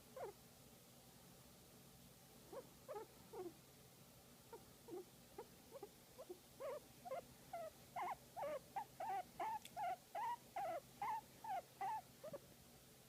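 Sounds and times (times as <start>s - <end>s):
guinea pig squeaking: 0.0s - 0.4s, 2.5s - 3.6s, 4.5s - 12.4s.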